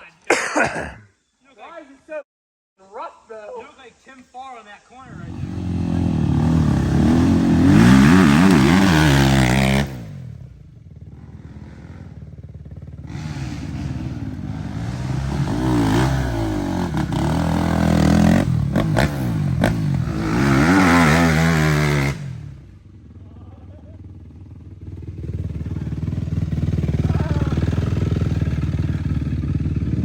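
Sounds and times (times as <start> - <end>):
dirt bike engine revving: 5.0 - 23.0, 24.0 - 30.0.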